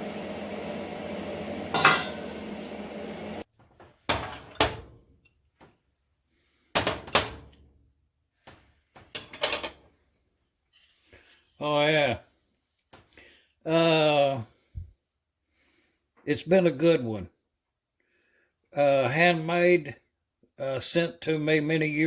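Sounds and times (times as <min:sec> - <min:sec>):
steady hum: 0:00.0 - 0:03.4
metal clanking and clinking: 0:01.7 - 0:02.3.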